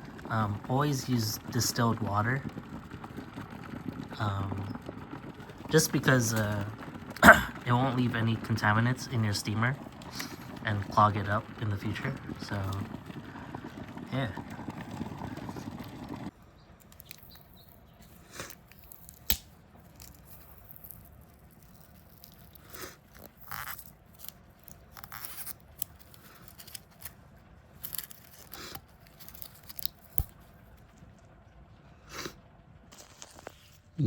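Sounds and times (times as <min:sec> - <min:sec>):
sticker tearing and rasping: 0:16.9 - 0:27.2, 0:27.8 - 0:30.4.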